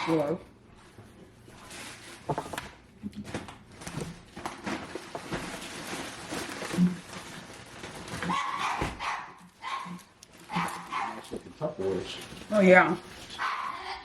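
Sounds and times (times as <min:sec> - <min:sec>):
items knocking: 0:02.2 - 0:09.2
bags rustling: 0:03.2 - 0:13.8.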